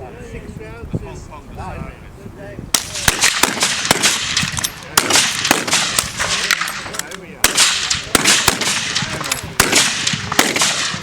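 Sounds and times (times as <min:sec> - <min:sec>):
rifle shots: 0:02.8 - 0:11.0.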